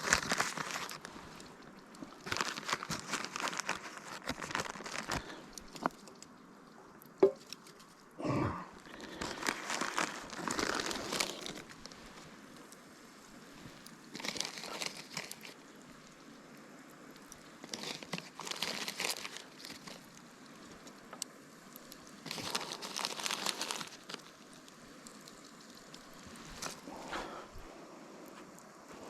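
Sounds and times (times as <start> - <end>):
plastic bag crinkling: 0.0 - 6.2, 8.8 - 12.5, 13.5 - 16.2, 17.2 - 20.9, 22.2 - 27.4.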